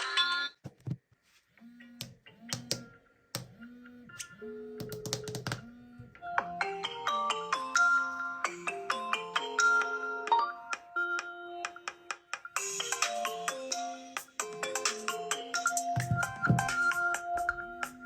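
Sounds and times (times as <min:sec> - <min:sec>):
phone ringtone melody: 0:06.2 - 0:11.9, 0:12.6 - 0:18.0.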